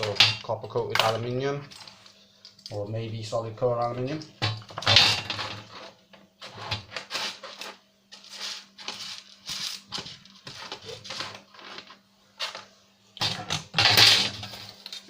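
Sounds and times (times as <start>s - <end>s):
plastic parts scraping and clattering: 4.4s - 15.0s.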